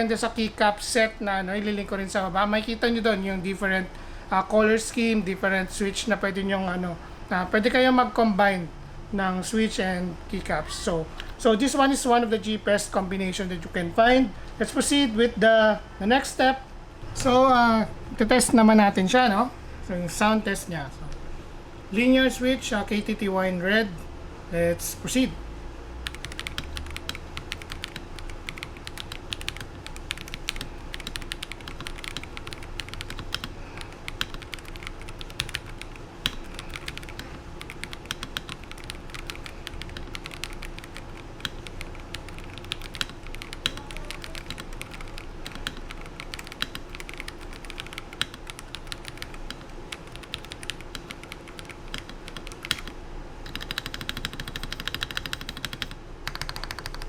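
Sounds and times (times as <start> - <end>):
mechanical keyboard typing: 26.0 - 57.0.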